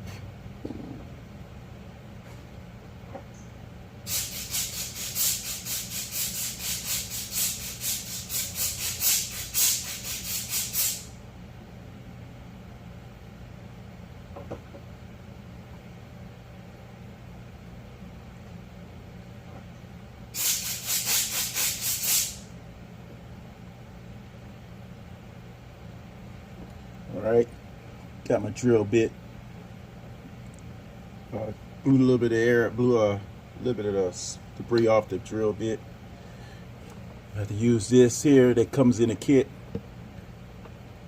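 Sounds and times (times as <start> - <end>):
compressed air blow gun hissing: 4.1 - 11.1, 20.4 - 22.5.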